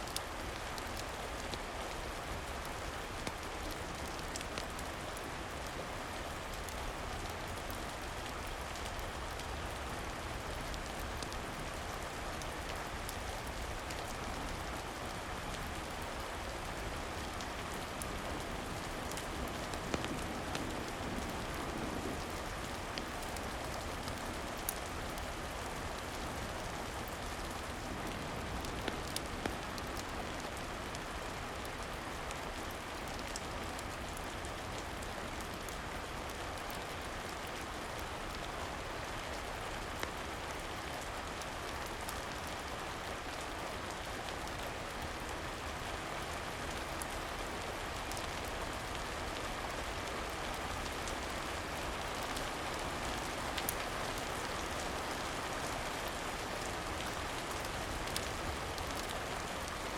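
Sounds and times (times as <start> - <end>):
steady rain falling: 0.0 - 59.9
wood fire crackling and popping: 3.2 - 5.0, 53.1 - 54.3, 56.6 - 59.2.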